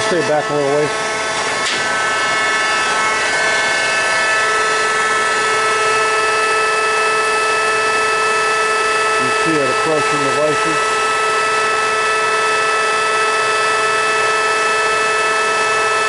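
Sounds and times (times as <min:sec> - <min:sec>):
bandsaw running: 0:00.0 - 0:16.0.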